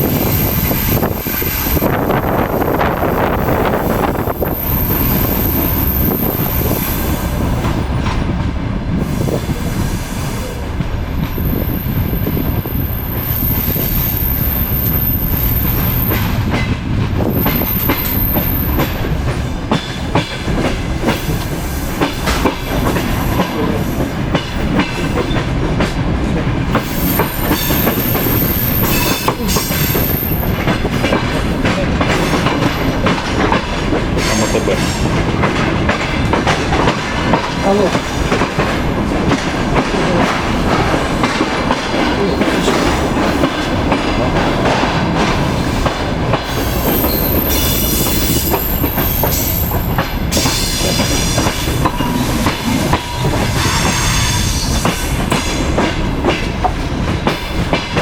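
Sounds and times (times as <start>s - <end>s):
high wheel squeal: 0.0s - 7.2s, 17.3s - 18.8s, 26.8s - 30.6s, 46.5s - 52.4s
train wheels clattering over rail joints: 15.3s - 58.0s.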